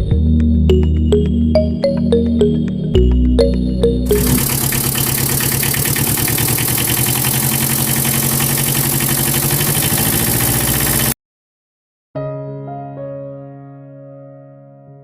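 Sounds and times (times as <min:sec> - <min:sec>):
piano music: 0:00.8 - 0:04.4, 0:12.2 - 0:15.0
motor chugging: 0:04.1 - 0:11.2.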